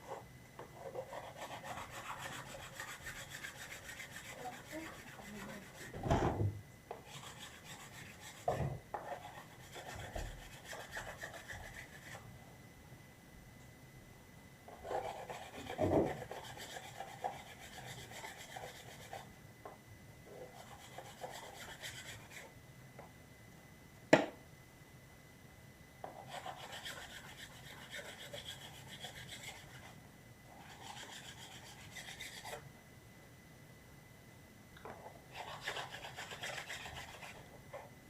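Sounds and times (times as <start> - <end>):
hand sanding plastic: 0.8 - 6.0.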